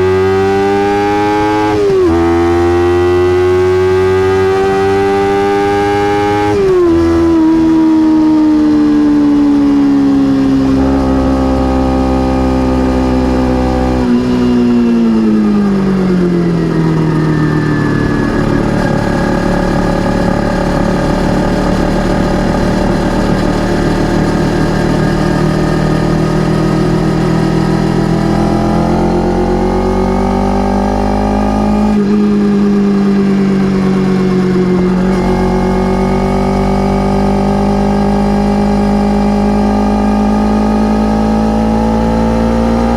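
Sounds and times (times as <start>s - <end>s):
motorcycle engine running: 0.0s - 42.9s
wind noise: 3.8s - 30.6s, 31.6s - 36.8s.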